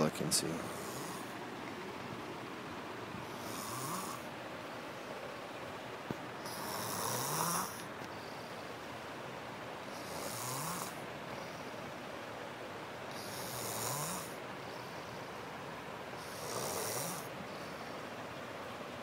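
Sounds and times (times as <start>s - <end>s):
person snoring: 3.4s - 4.2s, 13.1s - 14.4s, 16.2s - 17.3s.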